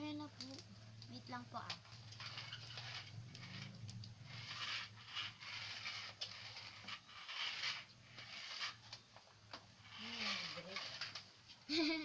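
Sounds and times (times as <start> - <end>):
steady low hum: 0.0 - 8.7
scraping and rustling handling noise: 0.4 - 11.6.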